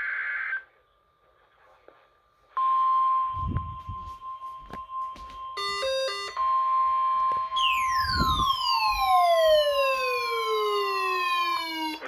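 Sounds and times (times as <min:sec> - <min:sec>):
steady warning alarm tone: 0:03.2 - 0:12.0
tone gliding down in pitch: 0:07.6 - 0:12.0.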